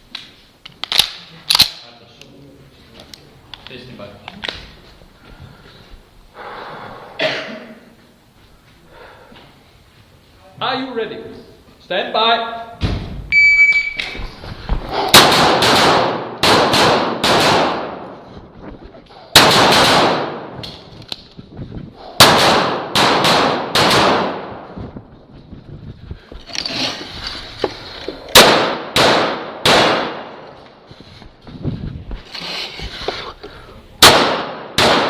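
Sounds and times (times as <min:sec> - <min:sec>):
pistol shots echoing: 0:15.1 - 0:18.1, 0:19.3 - 0:20.6, 0:22.2 - 0:24.7, 0:28.3 - 0:30.4, 0:34.0 - 0:35.0.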